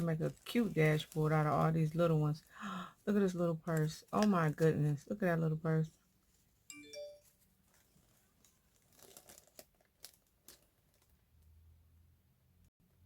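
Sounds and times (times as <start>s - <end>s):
paper crinkling and rustling: 0.0s - 2.5s, 3.2s - 5.1s, 7.2s - 11.5s.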